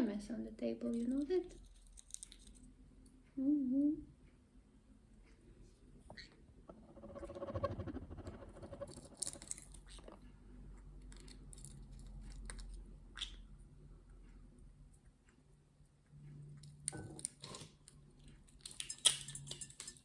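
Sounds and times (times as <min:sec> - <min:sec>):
buzzing rasp: 0:06.7 - 0:09.6.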